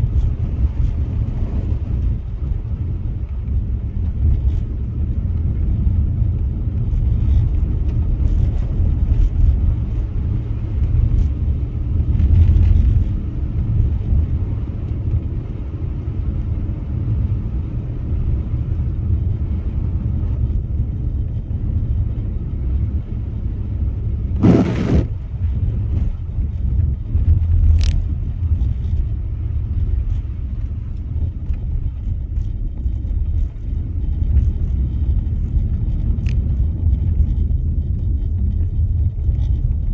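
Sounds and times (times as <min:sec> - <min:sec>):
car driving on snow: 0:00.0 - 0:39.9
short sharp noise: 0:24.4 - 0:25.2.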